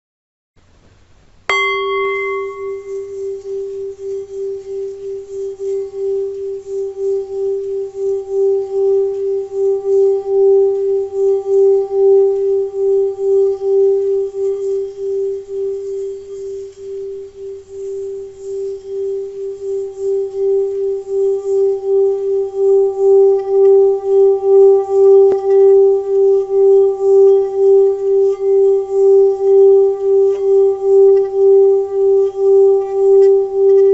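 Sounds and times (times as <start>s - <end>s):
bell ringing with pulsing waver: 1.5s - 33.9s.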